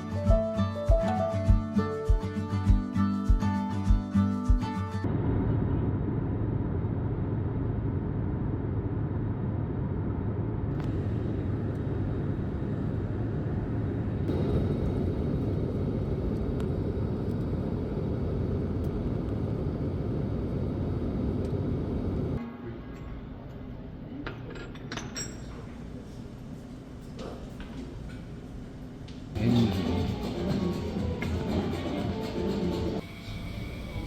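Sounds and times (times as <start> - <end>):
vehicle rumbling in motion: 5.0 - 22.4.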